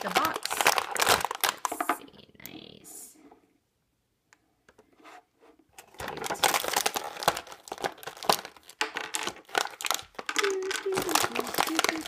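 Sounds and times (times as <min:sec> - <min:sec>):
packaging crinkling and tearing: 0:00.0 - 0:02.0, 0:05.8 - 0:12.0.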